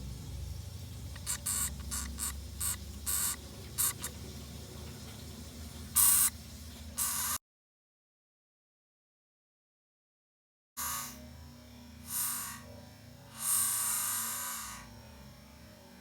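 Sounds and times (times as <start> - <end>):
hamster squeaking: 1.1 - 4.2, 7.0 - 7.4.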